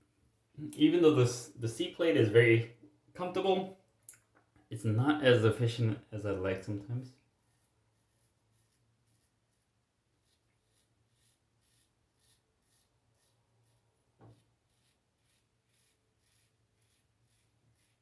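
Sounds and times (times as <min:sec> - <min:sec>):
razor scraping through stubble: 0:07.4 - 0:18.0.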